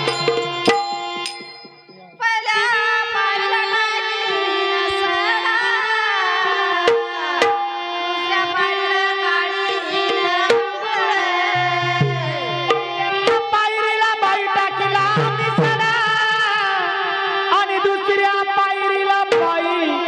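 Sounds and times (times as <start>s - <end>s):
held melodic note: 0.0s - 2.2s
tabla drum strokes: 0.0s - 2.3s, 11.6s - 13.6s, 14.8s - 16.4s.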